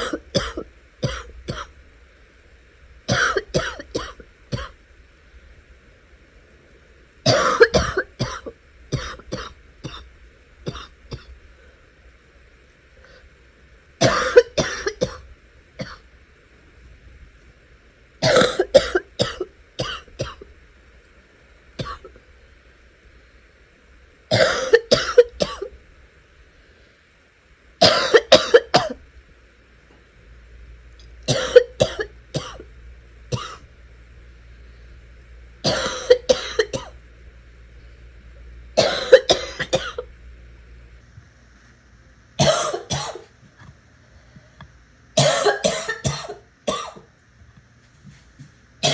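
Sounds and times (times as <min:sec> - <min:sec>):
person coughing in fits: 0:00.0 - 0:01.7, 0:03.1 - 0:04.8, 0:07.3 - 0:10.1, 0:10.7 - 0:11.3, 0:14.0 - 0:16.0, 0:18.2 - 0:20.4, 0:21.8 - 0:22.1, 0:24.3 - 0:25.7, 0:27.8 - 0:29.0, 0:31.3 - 0:32.6, 0:33.4 - 0:33.7, 0:35.7 - 0:37.0, 0:38.8 - 0:40.1, 0:42.4 - 0:43.3, 0:45.2 - 0:47.1.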